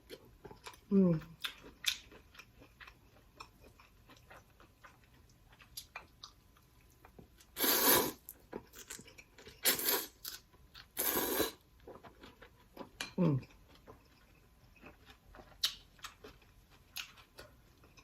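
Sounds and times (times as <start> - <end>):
soft chewing clicks: 0.1 - 7.5, 11.8 - 18.0
crunching or slurping: 7.6 - 9.0, 9.6 - 10.4, 11.0 - 11.6.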